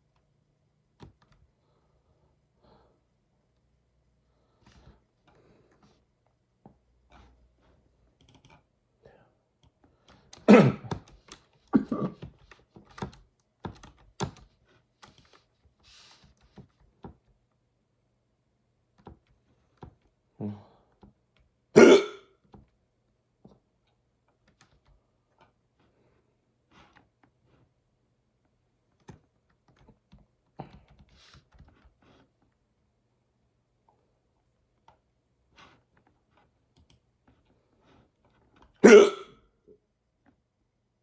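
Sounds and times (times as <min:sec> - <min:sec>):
keyboard typing clicks: 0:08.2 - 0:08.6
person hiccuping: 0:10.5 - 0:11.0, 0:11.8 - 0:12.2, 0:21.8 - 0:22.3, 0:38.8 - 0:39.4.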